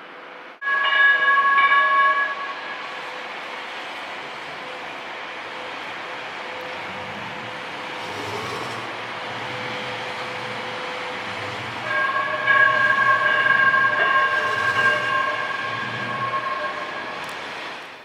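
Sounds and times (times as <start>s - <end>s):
train rumbling: 0.0s - 18.0s
train horn chord: 0.6s - 2.8s, 10.0s - 17.4s.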